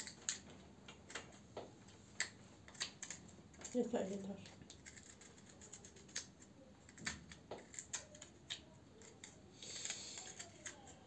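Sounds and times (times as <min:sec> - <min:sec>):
utensil scraping radish: 0:02.7 - 0:11.0.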